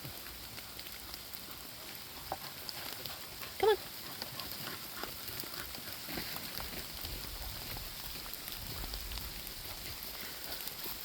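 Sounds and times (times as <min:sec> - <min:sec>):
rain on foliage: 0:00.0 - 0:11.0
raindrops ticking: 0:00.0 - 0:11.0.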